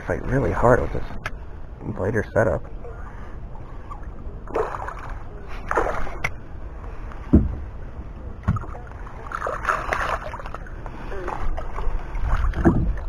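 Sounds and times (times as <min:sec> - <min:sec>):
water around a boat: 0:00.0 - 0:13.0
wind: 0:00.0 - 0:13.0
water sloshing: 0:02.7 - 0:13.0
knocks on a boat: 0:07.3 - 0:07.7, 0:08.4 - 0:08.7.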